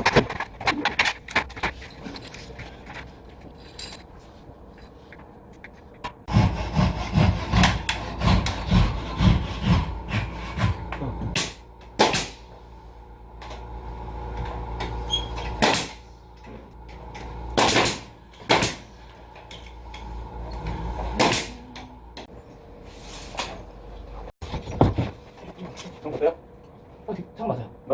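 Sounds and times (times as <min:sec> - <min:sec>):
hand saw cutting wood: 0:06.3 - 0:11.6.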